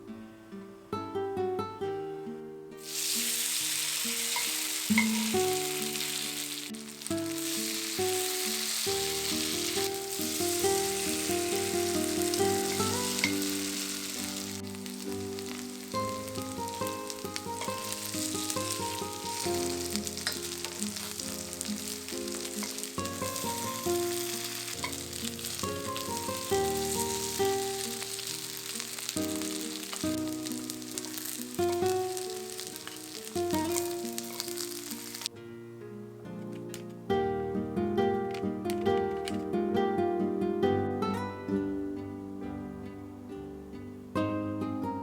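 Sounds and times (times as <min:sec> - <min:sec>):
batter sizzling in oil: 0:02.8 - 0:35.3
melodic background music: 0:02.8 - 0:45.0.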